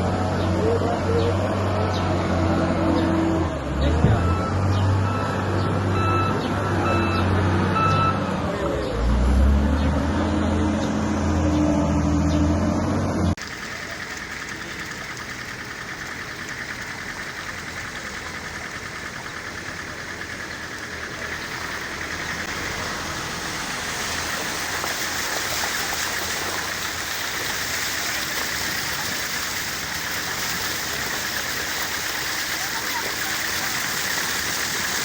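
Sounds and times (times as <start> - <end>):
flowing water rushing: 13.4 - 35.0.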